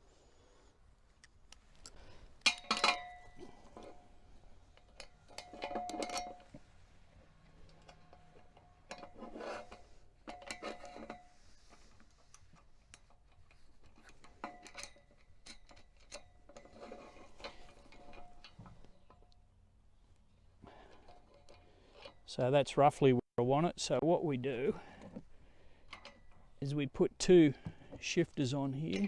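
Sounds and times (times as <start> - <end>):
metal parts clinking and scraping: 2.4 - 19.3, 28.1 - 29.0.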